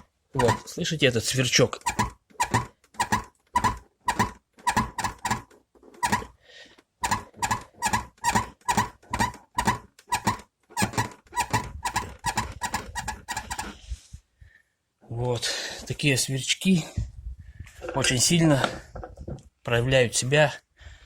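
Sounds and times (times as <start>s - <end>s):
car door squeaking: 0.0s - 0.8s, 1.8s - 6.4s, 7.0s - 13.8s.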